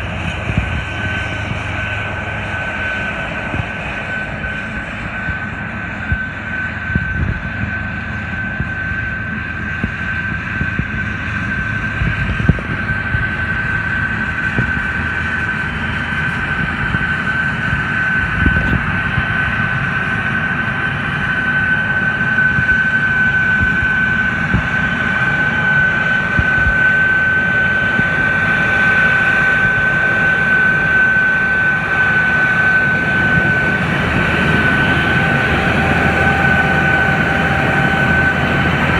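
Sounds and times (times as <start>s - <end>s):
combine harvester drone: 0.0s - 38.9s
high-pitched whine: 11.1s - 38.9s.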